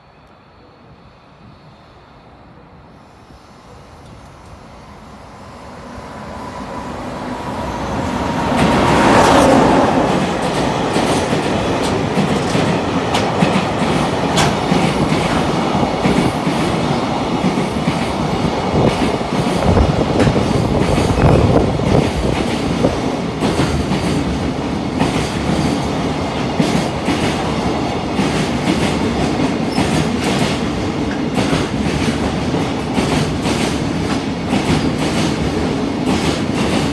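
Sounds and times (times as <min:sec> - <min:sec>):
freight train passing: 0:00.0 - 0:36.9
wheels clacking over rails: 0:08.5 - 0:36.9.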